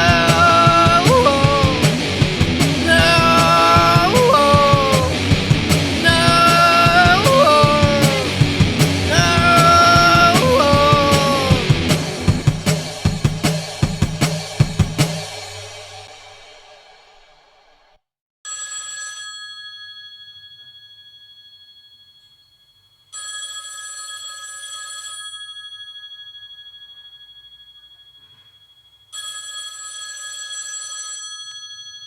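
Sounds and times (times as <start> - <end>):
telephone ringing: 29.1 - 32.0.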